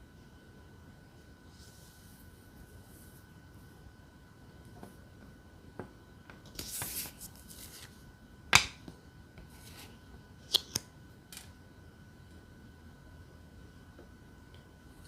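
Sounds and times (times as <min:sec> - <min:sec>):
cards tapping down on a table: 0:08.6 - 0:08.8.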